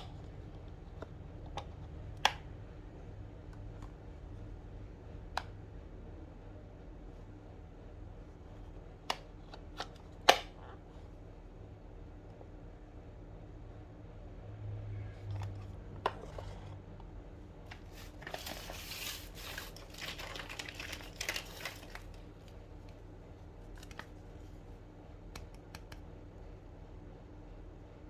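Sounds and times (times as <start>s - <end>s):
toy packaging crinkling: 17.7s - 22.5s
light clicks and taps: 25.3s - 26.1s.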